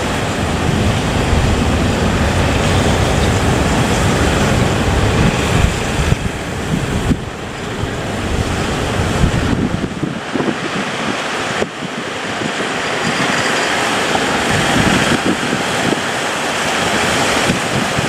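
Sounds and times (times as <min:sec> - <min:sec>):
heavy low rumble: 0:00.0 - 0:10.3
waves crashing: 0:00.0 - 0:18.0
wind buffeting microphone: 0:00.0 - 0:18.0.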